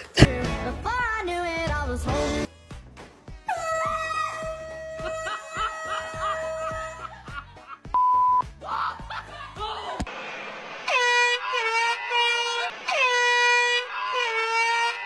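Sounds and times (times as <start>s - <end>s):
short steady beep: 8.0s - 8.4s
air horn blasts: 10.9s - 15.0s.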